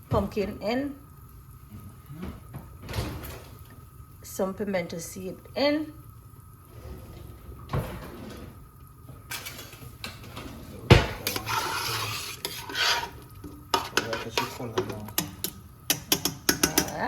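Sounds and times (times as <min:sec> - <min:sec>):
metal kitchenware clattering: 0:09.3 - 0:17.0.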